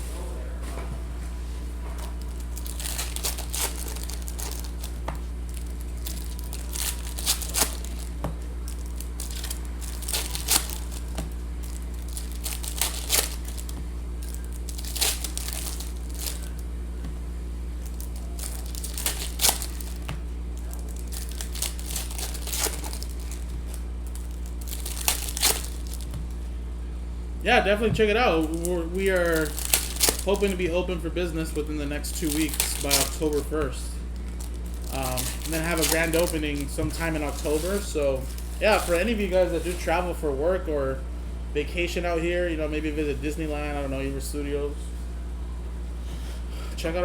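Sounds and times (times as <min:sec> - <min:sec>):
low electrical hum: 0:00.0 - 0:47.0
card wrappers crinkling and tearing: 0:01.8 - 0:16.8, 0:17.7 - 0:26.5, 0:27.5 - 0:40.1.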